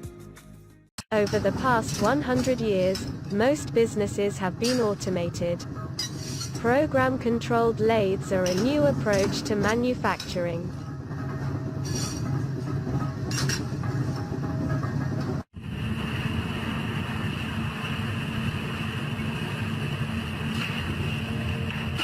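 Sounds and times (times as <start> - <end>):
high machine whine: 1.1 - 22.0
low hum: 1.1 - 22.0
machinery running: 1.1 - 22.0.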